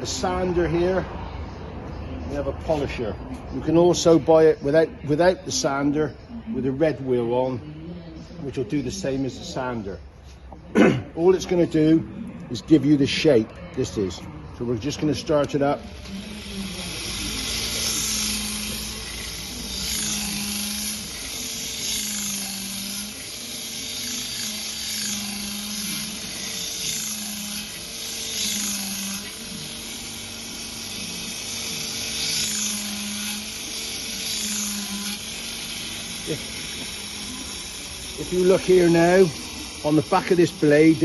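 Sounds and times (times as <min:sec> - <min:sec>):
bench grinder motor hum: 0:13.8 - 0:41.0
blade grinding hiss: 0:16.0 - 0:41.0.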